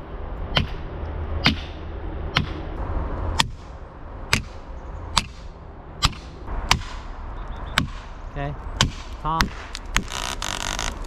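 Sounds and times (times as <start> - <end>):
wedge being hammered into wood: 6.0 - 7.0, 7.8 - 8.1, 8.8 - 10.1.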